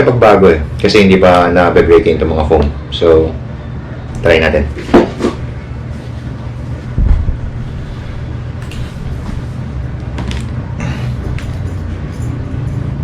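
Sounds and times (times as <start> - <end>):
steady low rumble: 5.4 - 13.0
loud dull thump: 7.0 - 7.6.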